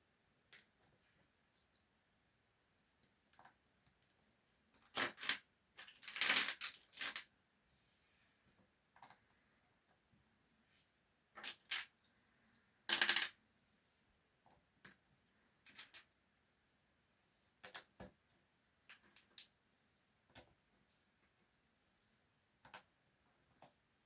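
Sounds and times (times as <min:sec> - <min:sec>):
small hard objects clattering: 0:04.8 - 0:07.3.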